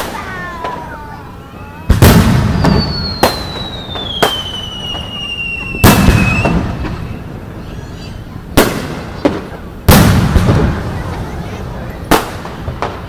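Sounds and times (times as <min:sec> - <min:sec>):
falling firework whistle: 0:00.0 - 0:08.1
fireworks bangs: 0:00.0 - 0:13.0.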